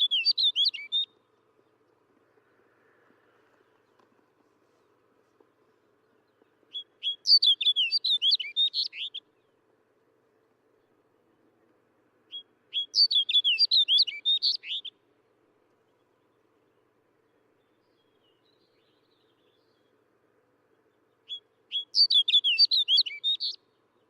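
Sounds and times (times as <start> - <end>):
bird warbling song: 0.0 - 1.2, 5.9 - 9.6, 12.3 - 15.0, 20.7 - 24.0.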